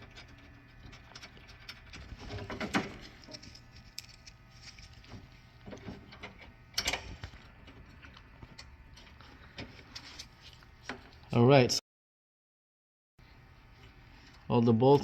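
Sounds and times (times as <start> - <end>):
small metallic clicks and scrapes: 0.0 - 11.2.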